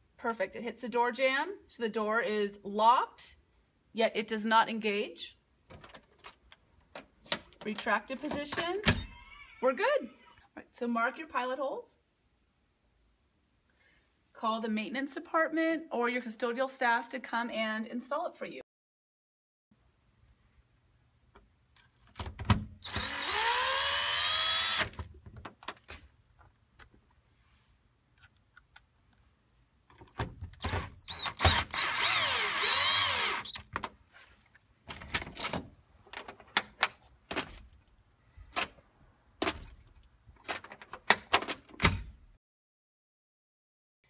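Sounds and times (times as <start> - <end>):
power drill drilling: 22.8 - 24.9, 30.7 - 33.6.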